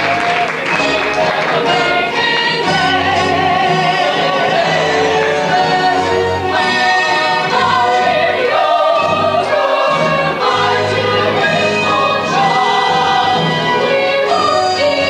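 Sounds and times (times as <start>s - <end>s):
band accompaniment: 0.0s - 15.0s
ensemble singing: 0.0s - 15.0s.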